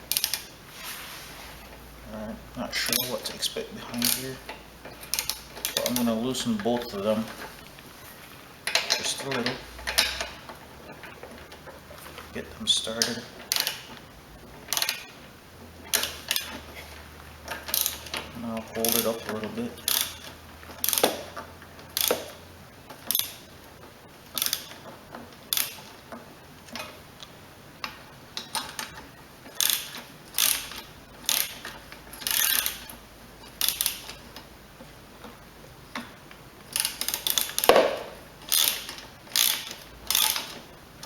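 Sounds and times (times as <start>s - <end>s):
ratchet wrench clicking: 0.1s - 0.5s, 2.8s - 7.4s, 8.6s - 10.5s, 12.9s - 14.0s, 14.6s - 15.2s, 15.8s - 16.7s, 17.4s - 23.5s, 24.3s - 24.8s, 25.4s - 26.0s, 27.8s - 34.3s, 36.7s - 40.7s.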